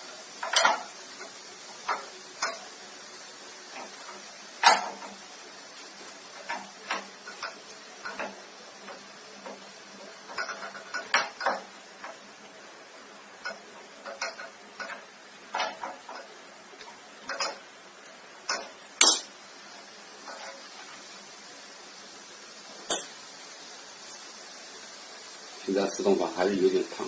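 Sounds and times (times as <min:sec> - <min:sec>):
tools and metal parts clicking: 0:00.4 - 0:02.7, 0:06.4 - 0:09.6, 0:10.2 - 0:12.2, 0:13.4 - 0:16.3, 0:17.2 - 0:19.2.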